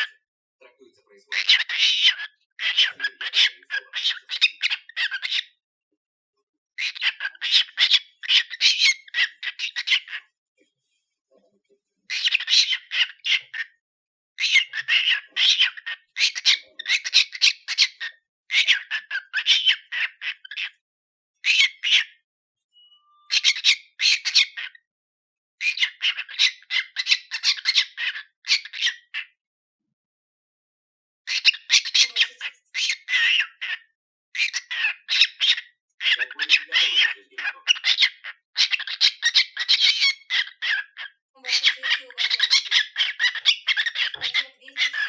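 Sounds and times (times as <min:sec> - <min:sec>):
cockatiel chattering: 0:01.3 - 0:05.4, 0:06.8 - 0:10.2, 0:12.1 - 0:13.7, 0:14.4 - 0:20.7, 0:23.3 - 0:24.7, 0:25.6 - 0:29.2, 0:31.3 - 0:33.8, 0:34.4 - 0:45.0.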